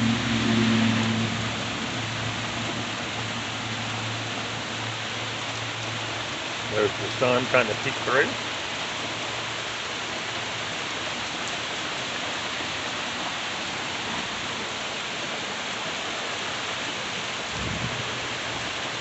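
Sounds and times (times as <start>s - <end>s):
low rumble: 0.0s - 4.2s
heavy rain pouring: 0.0s - 19.0s.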